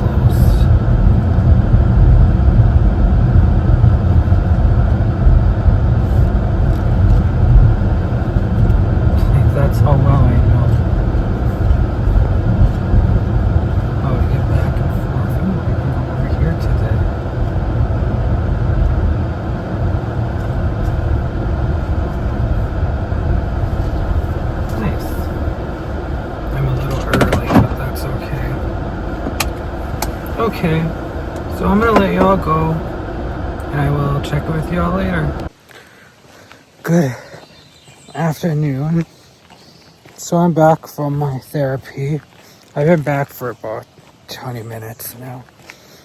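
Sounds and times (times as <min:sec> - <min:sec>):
car cabin road and engine noise: 0:00.0 - 0:35.8.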